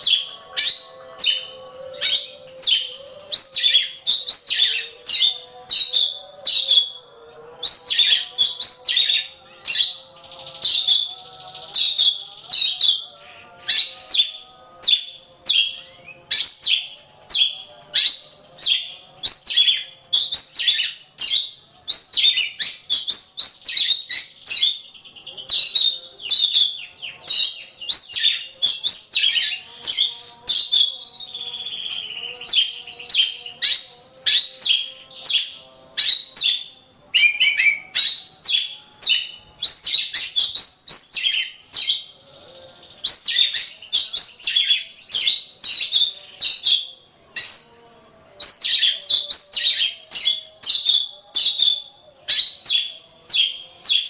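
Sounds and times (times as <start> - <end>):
bird singing whistles and chirps: 0.0 - 54.0.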